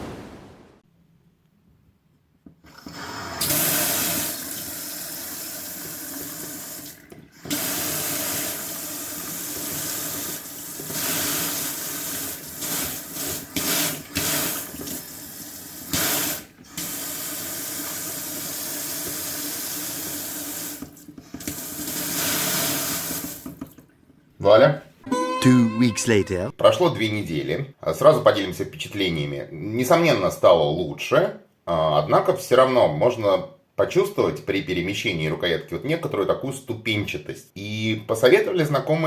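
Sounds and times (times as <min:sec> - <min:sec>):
tap water running into sink: 0:02.9 - 0:23.9.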